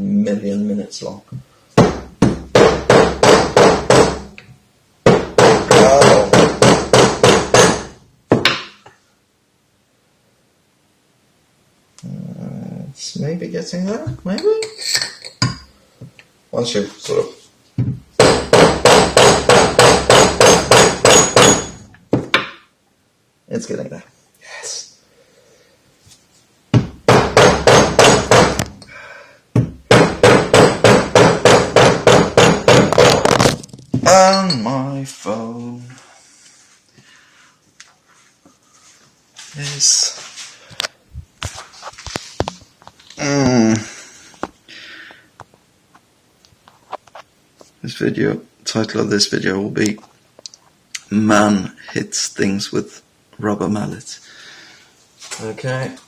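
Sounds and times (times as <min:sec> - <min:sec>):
rubber mallet hammering metal bar: 0:01.8 - 0:04.3, 0:05.1 - 0:08.8, 0:18.2 - 0:22.6, 0:26.8 - 0:28.7, 0:29.6 - 0:33.5.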